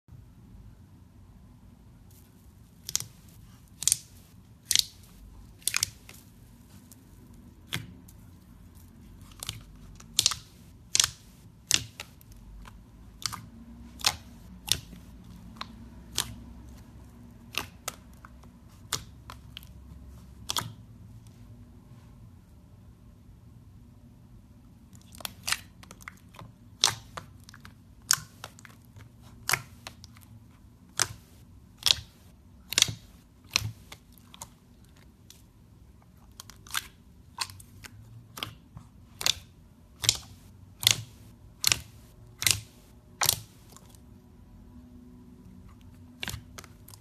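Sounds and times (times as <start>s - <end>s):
slime popping and clicking: 2.8s - 6.2s, 9.3s - 19.6s, 30.9s - 34.5s, 36.3s - 44.0s.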